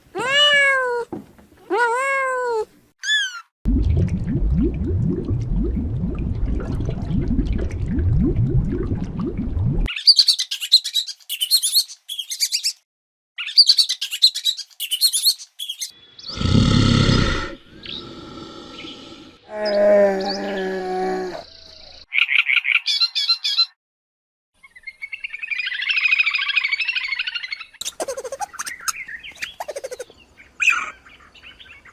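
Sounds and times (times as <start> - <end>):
birds chirping: 9.9 - 12.8, 13.4 - 23.7, 24.6 - 31.9.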